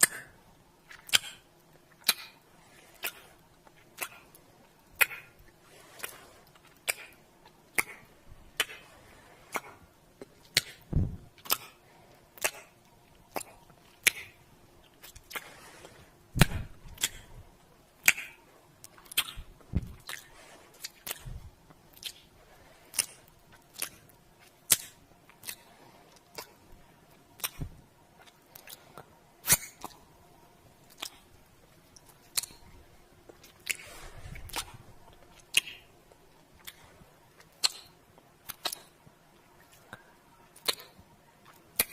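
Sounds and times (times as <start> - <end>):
lips making kissing sounds: 0.9 - 2.4, 6.8 - 7.2, 10.5 - 11.7, 18.0 - 18.4, 19.0 - 20.2, 27.4 - 28.8, 35.4 - 35.8, 37.4 - 38.9, 40.6 - 41.0.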